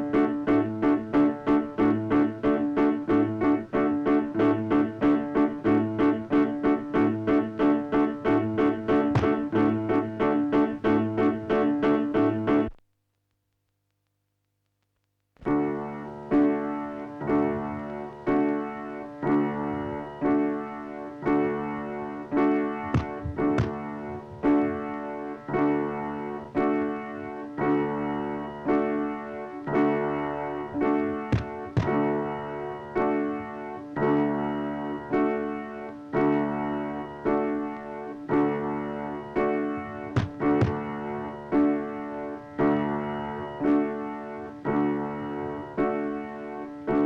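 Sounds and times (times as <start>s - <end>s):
piano chords ringing: 0.0s - 12.8s, 15.4s - 47.0s.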